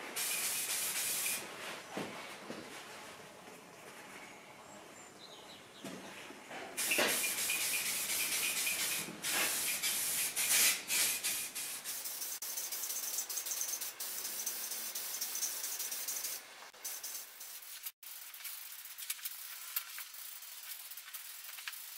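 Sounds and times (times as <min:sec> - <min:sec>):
spray paint hissing: 0:00.1 - 0:01.4, 0:06.8 - 0:21.9.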